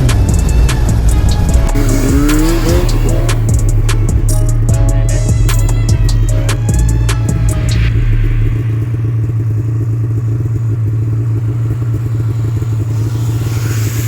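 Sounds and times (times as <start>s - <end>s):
snowmobile engine droning: 0.0s - 4.8s, 7.8s - 14.0s
music: 0.0s - 8.8s.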